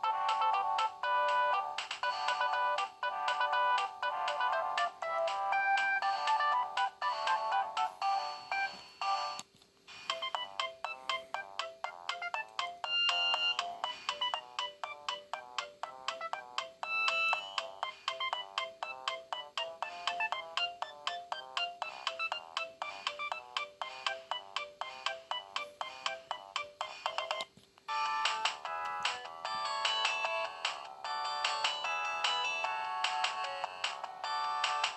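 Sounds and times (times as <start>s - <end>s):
mobile phone ringtones: 10.1s - 23.7s.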